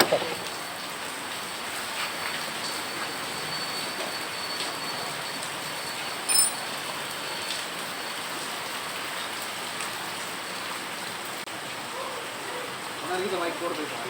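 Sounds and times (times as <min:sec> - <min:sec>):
brief high-pitched ring: 0:06.3 - 0:06.6.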